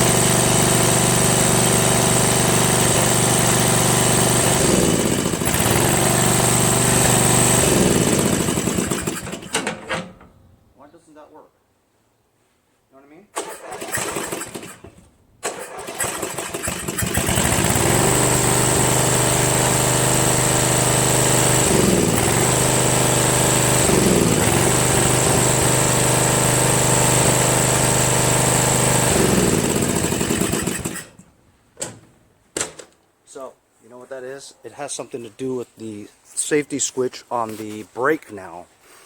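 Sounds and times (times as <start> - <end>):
lawn tractor engine running: 0.0 - 9.6, 13.4 - 31.2
engine starter cranking: 2.7 - 10.1, 13.4 - 31.2.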